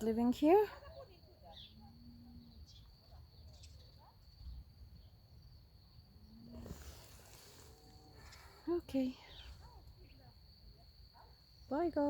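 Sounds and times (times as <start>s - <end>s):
faint chirps: 6.2s - 12.0s.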